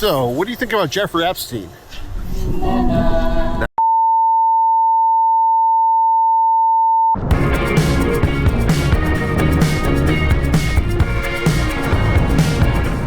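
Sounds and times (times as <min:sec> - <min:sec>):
high-pitched censor beep: 0:03.8 - 0:07.2
background music: 0:07.3 - 0:13.0.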